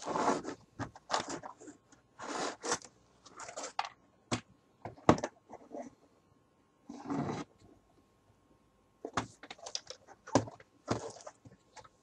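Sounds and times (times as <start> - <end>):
plastic toy gun scrapes: 0.0 - 3.8.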